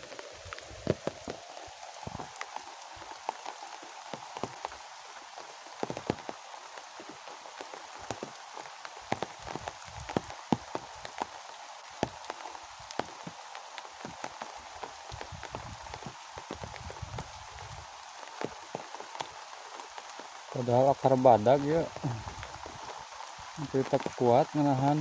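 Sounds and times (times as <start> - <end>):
rain hissing: 0.0 - 25.0
sharp raindrops hitting surface: 0.0 - 25.0.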